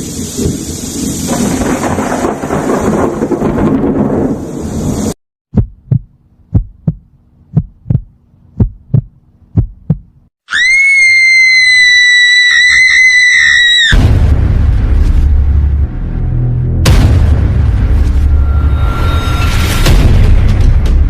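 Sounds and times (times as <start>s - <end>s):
heartbeat double thumps: 5.5s - 10.3s.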